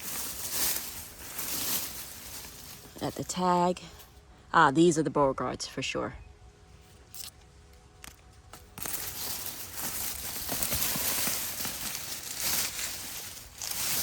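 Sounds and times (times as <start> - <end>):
leaves rustling and crackling: 0.0 - 4.1, 8.1 - 14.0.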